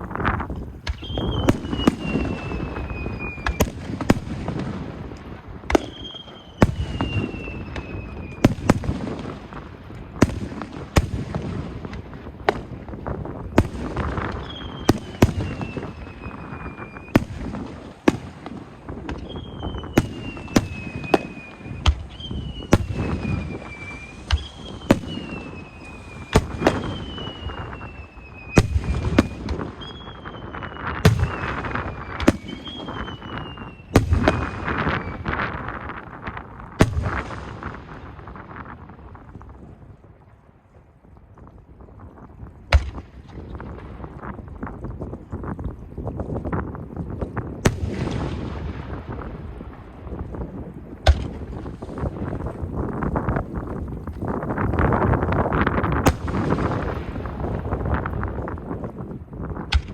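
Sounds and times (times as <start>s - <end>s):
fireworks bursts and bangs: 0.0s - 40.3s, 47.0s - 59.9s
falling firework whistles: 0.8s - 4.3s, 5.7s - 9.0s, 13.6s - 35.6s.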